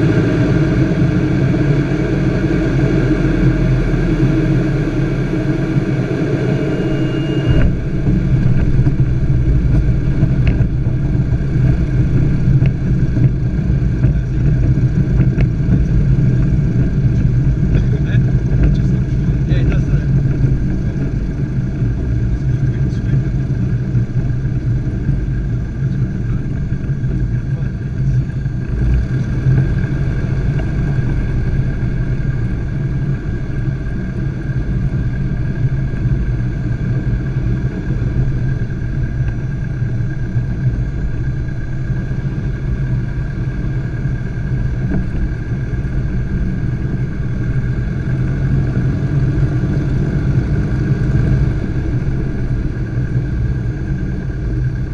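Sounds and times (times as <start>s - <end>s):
light aircraft engine droning: 0.0s - 54.9s.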